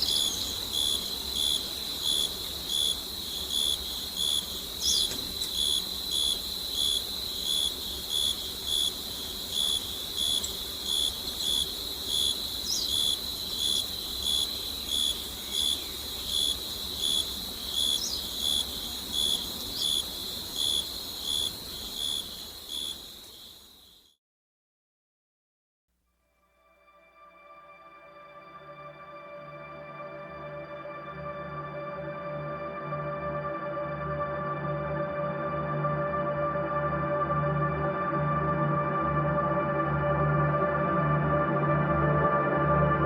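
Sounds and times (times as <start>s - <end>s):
insects trilling: 0.0s - 24.1s
insect chirping: 0.0s - 24.2s.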